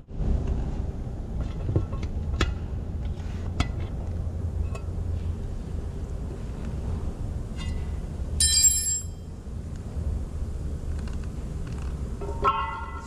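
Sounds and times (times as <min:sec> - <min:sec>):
steady low rumble: 0:00.0 - 0:13.0
metal tools clinking: 0:08.4 - 0:09.3.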